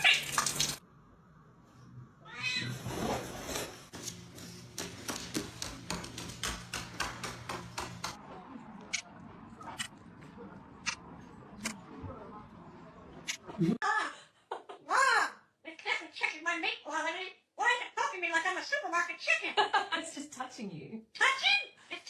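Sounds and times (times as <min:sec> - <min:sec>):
cat meowing: 0:02.2 - 0:02.8.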